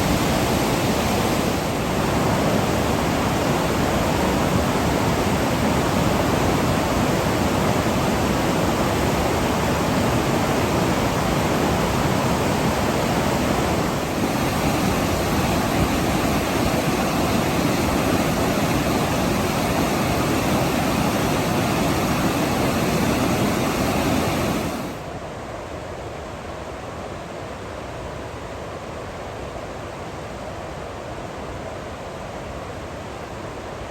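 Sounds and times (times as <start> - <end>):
waterfall rushing: 0.0 - 25.1.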